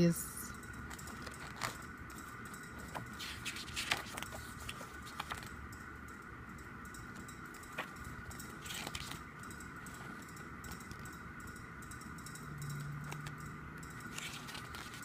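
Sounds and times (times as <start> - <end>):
faint steady hum: 0.0 - 15.0
paper pages rustling: 1.0 - 1.8, 2.8 - 5.5, 8.6 - 9.2, 14.1 - 15.0.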